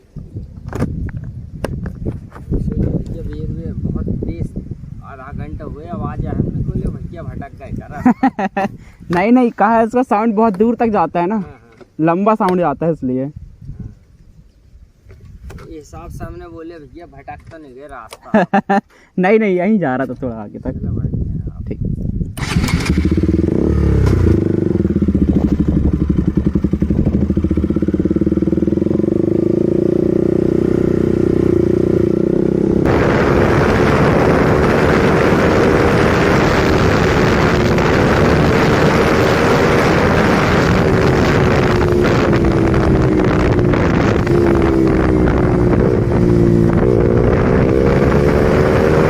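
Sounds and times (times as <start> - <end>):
wind noise: 0.0 - 18.7, 19.8 - 49.0
motorcycle engine running: 22.4 - 49.0.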